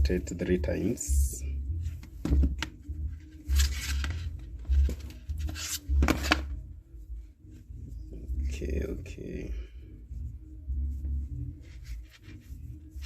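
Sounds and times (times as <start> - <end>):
cord rustling and scraping: 1.8 - 6.7, 10.8 - 13.0.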